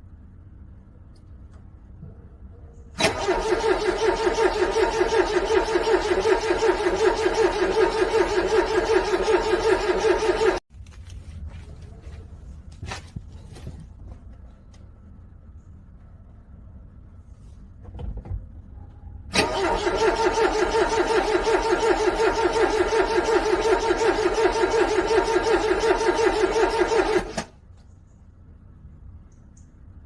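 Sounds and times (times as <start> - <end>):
starter motor cranking engine: 3.0 - 10.6, 19.3 - 27.6.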